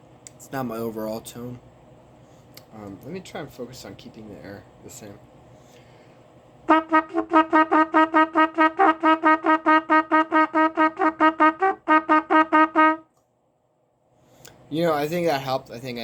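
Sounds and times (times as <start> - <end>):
trumpet playing repeated notes: 6.7 - 13.1.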